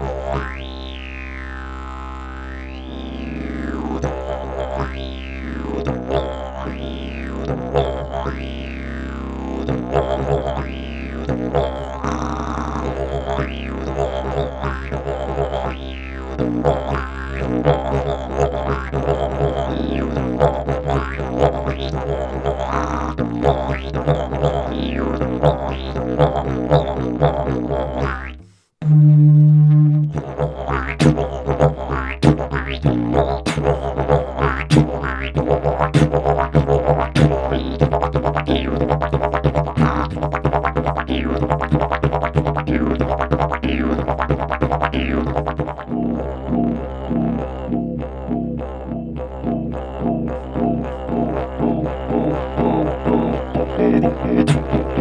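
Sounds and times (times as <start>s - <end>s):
didgeridoo drone: 0.0s - 55.0s.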